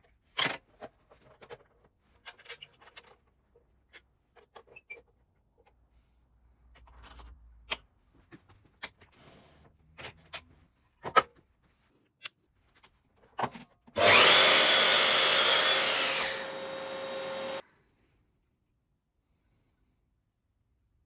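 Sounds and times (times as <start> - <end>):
miter saw motor whine: 14.0 - 17.6.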